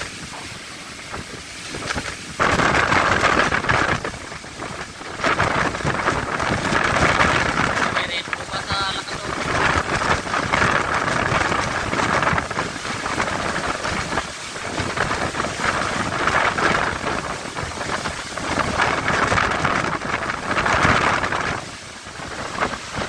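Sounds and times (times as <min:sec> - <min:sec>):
heavy surf: 0:00.0 - 0:23.0
storm wind: 0:00.0 - 0:23.0
wind buffeting microphone: 0:00.0 - 0:23.0.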